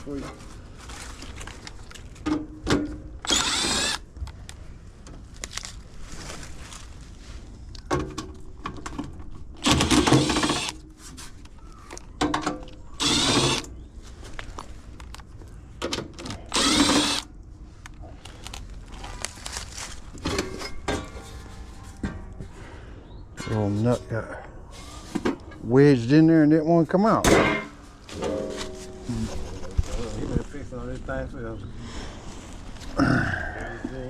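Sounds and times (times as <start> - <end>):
power drill bursts: 3.2 - 4.1, 9.6 - 10.8, 13.0 - 13.7, 16.4 - 17.3.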